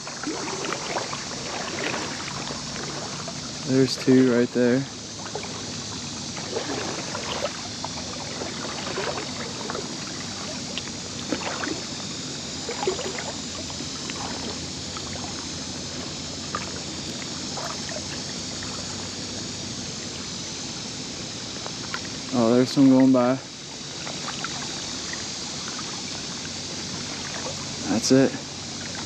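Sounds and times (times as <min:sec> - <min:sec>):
creek water rushing: 0:00.0 - 0:19.0
water sloshing and splashing: 0:00.0 - 0:29.0.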